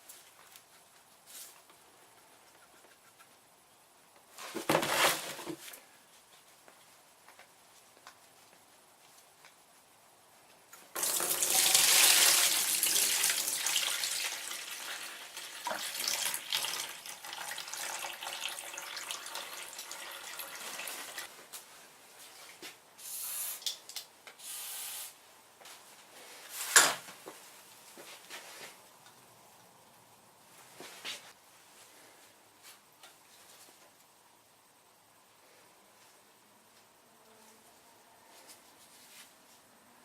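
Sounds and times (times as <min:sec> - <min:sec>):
oil stream draining into pan: 0:11.0 - 0:21.2.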